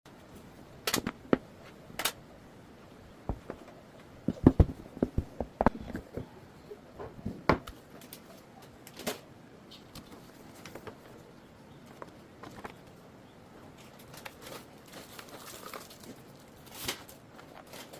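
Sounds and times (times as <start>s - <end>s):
packaging rustling: 13.8s - 17.9s.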